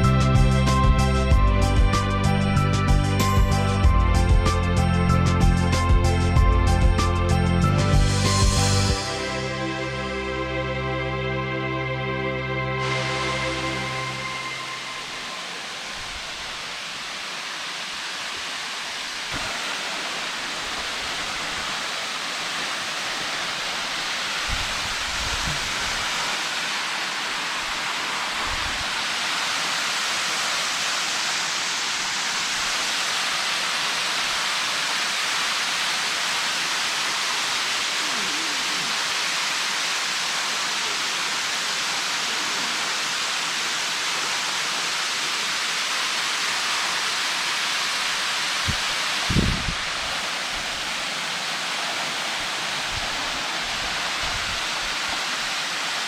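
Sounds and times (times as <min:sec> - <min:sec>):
waterfall rushing: 0:08.0 - 0:56.0.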